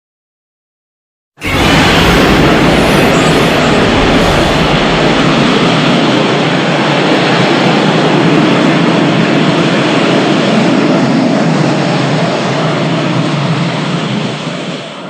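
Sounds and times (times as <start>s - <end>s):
monster mechanical rush: 1.4s - 7.4s.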